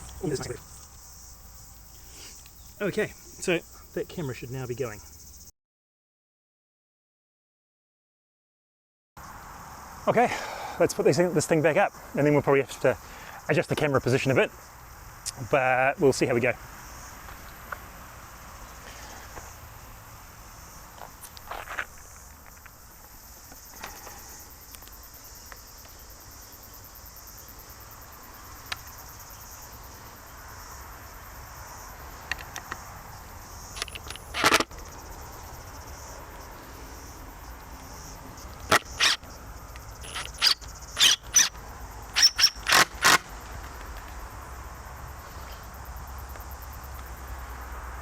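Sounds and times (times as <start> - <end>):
insects chirring: 0.0 - 5.5, 9.2 - 48.0
pole squeaking and knocking: 38.6 - 39.3, 40.0 - 41.6, 42.2 - 43.2.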